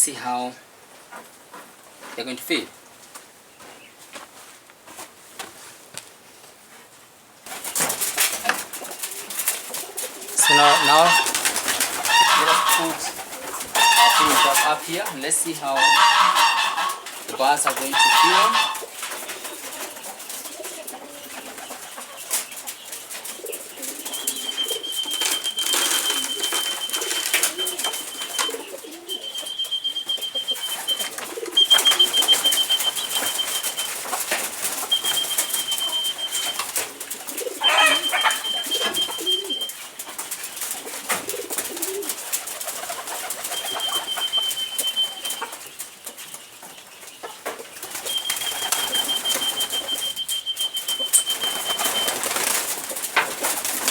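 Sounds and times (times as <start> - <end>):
poultry calling: 9.8 - 39.8, 40.8 - 46.3, 47.2 - 52.6
clicks and rustles: 22.0 - 53.9
high steady trill: 29.2 - 34.1, 34.7 - 36.7.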